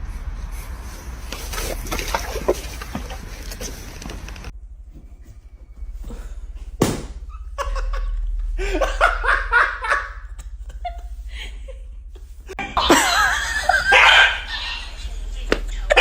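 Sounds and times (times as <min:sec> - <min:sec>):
sharp knock: 0:06.8 - 0:07.2
people laughing: 0:07.3 - 0:16.0.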